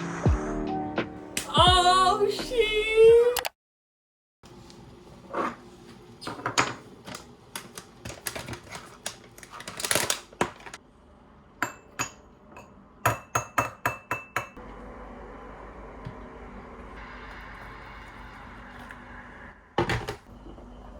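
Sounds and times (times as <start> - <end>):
dishes and utensils knocking: 11.6 - 14.6.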